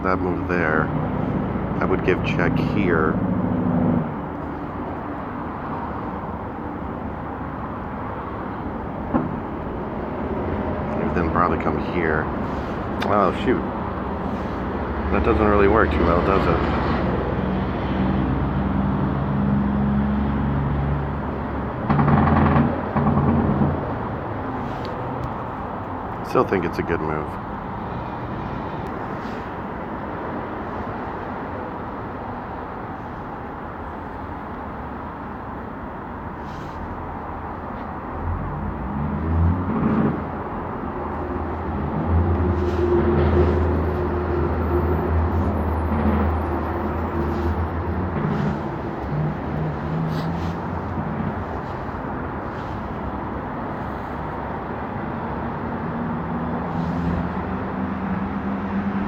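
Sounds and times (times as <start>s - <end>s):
bus engine rumbling: 0.0s - 59.0s
vehicle engine idling: 41.5s - 54.6s.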